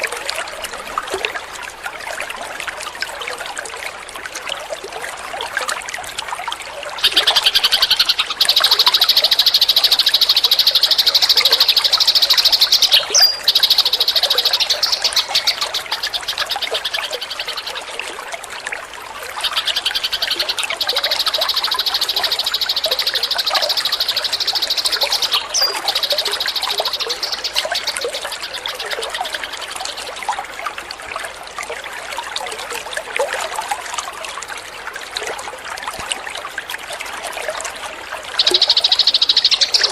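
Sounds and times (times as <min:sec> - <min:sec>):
trickle of running water: 0:00.0 - 0:39.9
sparrow chattering trill: 0:07.0 - 0:17.6.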